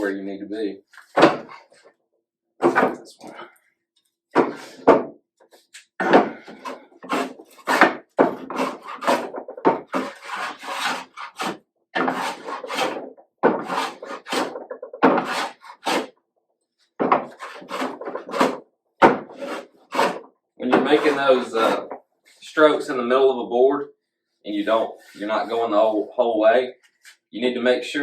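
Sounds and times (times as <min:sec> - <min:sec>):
hand plane rasping on wood: 0:06.2 - 0:16.1, 0:17.3 - 0:18.6, 0:19.3 - 0:21.9.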